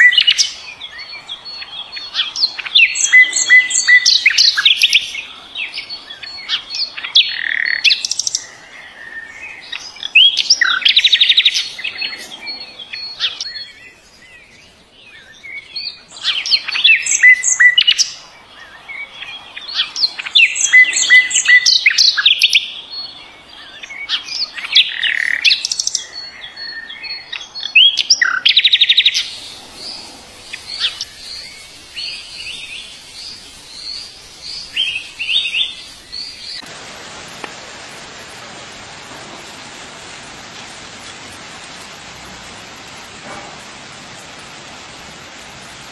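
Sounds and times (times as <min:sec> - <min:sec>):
songbird singing: 0:00.0 - 0:45.9
steady high hiss: 0:00.0 - 0:45.9.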